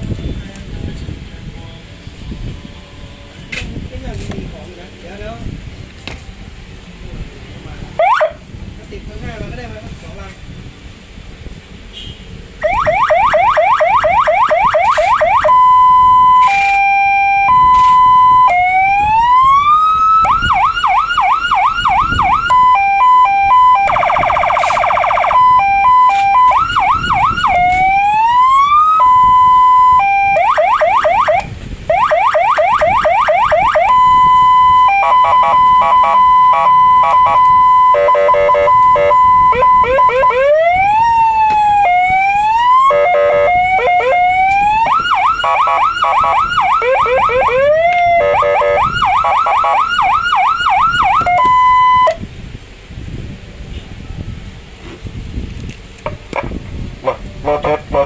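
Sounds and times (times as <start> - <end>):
electronic siren tones: 12.6 - 52.2
buzzy horn blast: 35.0 - 39.8, 42.9 - 44.2, 48.1 - 49.8.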